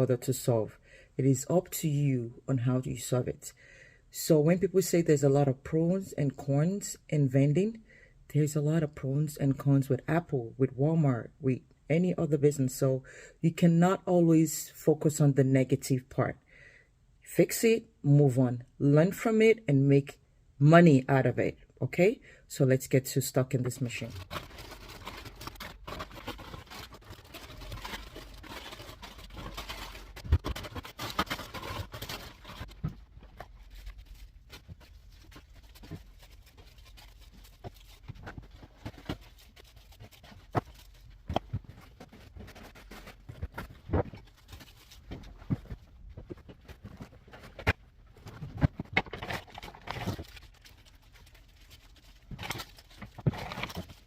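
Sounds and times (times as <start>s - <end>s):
items clicking and rustling: 24.2s - 54.0s.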